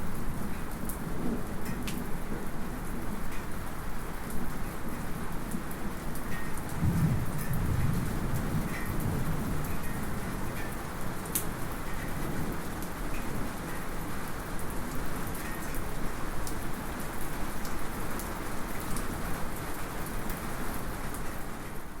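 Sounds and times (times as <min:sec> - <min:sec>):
light rain: 0:00.0 - 0:22.0
distant thunder rumble: 0:06.8 - 0:10.2.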